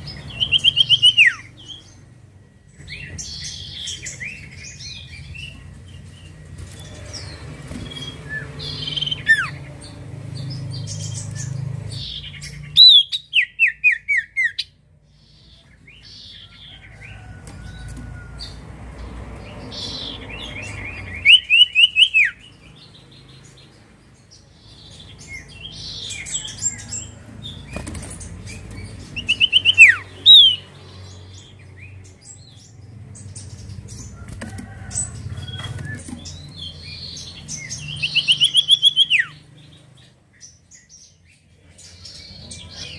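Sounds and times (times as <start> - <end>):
bird chirping and whistling: 0.1 - 1.9, 7.8 - 9.7, 11.0 - 14.7, 20.0 - 22.5, 29.1 - 30.7, 36.3 - 39.4.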